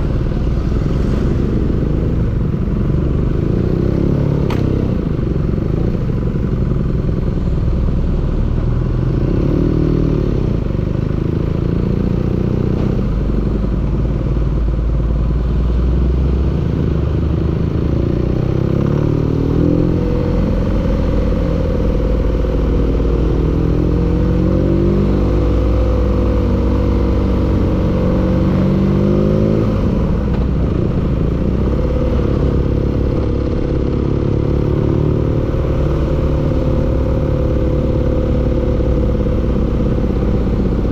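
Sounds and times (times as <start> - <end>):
engine running with knock: 4.3 - 7.4, 12.2 - 16.0, 29.8 - 40.9.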